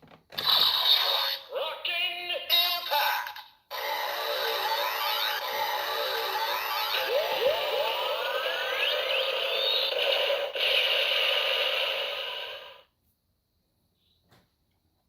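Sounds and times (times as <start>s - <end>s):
toy belt electronic sound effects: 0.4s - 1.5s, 3.7s - 12.8s.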